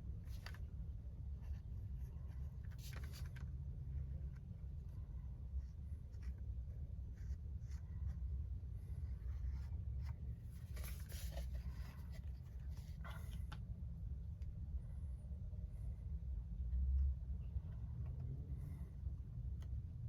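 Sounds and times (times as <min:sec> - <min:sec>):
steady low hum: 0:00.0 - 0:20.0
hand scratching and rubbing surface: 0:09.1 - 0:13.4.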